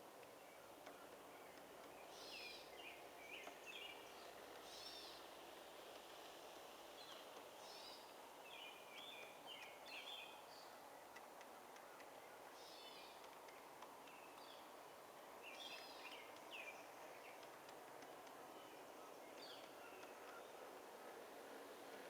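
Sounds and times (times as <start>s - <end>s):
faint outdoor background noise: 0.0s - 22.0s
bird chirping: 7.0s - 10.8s, 12.6s - 13.3s, 15.4s - 20.6s.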